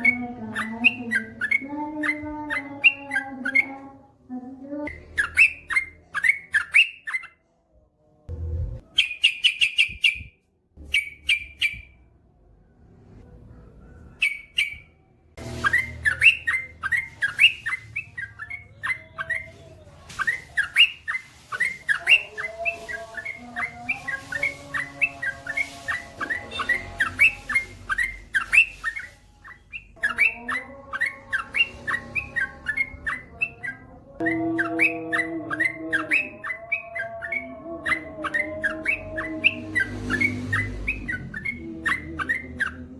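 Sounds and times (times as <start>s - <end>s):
bird calls: 0.0s - 3.9s, 4.8s - 7.4s, 8.9s - 12.0s, 14.1s - 42.9s
bird chirping: 0.0s - 4.1s, 4.8s - 7.4s, 8.3s - 12.1s, 13.2s - 42.9s
faint low sustained tones: 8.3s - 8.9s.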